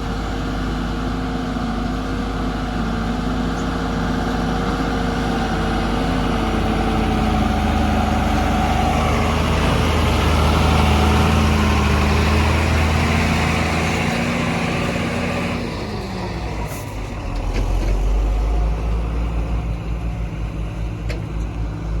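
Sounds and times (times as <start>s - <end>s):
heavy diesel engine revving: 0.0s - 22.0s.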